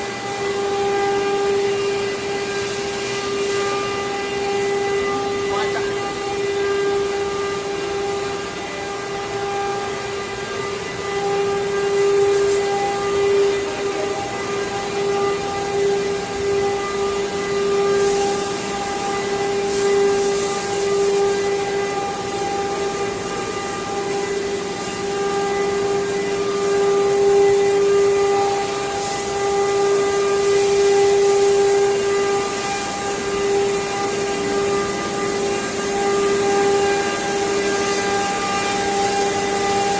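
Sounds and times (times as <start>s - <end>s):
router spindle high-pitched whine: 0.0s - 39.9s
hissing cutting noise: 5.0s - 6.4s.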